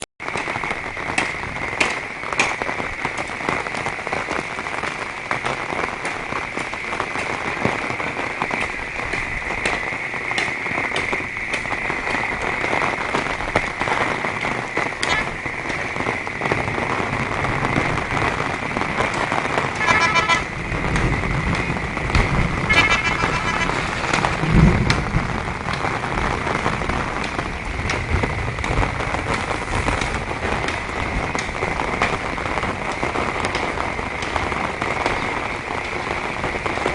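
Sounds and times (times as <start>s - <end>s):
heavy rain on hard surfaces: 0.0s - 36.9s
vehicle rumble: 7.4s - 36.9s
car horn toot: 19.8s - 20.6s, 22.7s - 24.1s.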